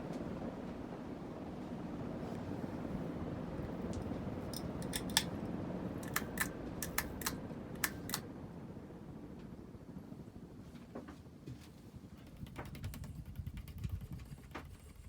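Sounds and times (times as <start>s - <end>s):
ceiling fan running: 0.0s - 15.0s
sharp light clicks: 3.9s - 8.3s.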